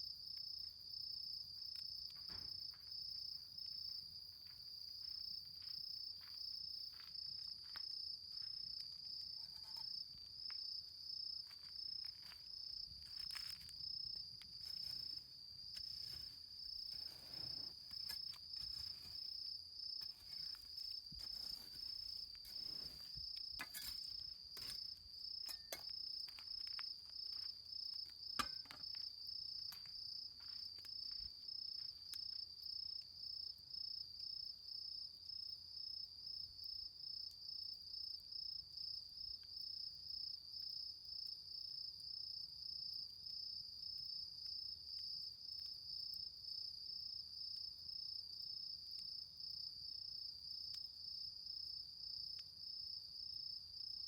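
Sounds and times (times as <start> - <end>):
insects chorus: 0.0 - 54.0
campfire embers crackling: 0.1 - 33.6.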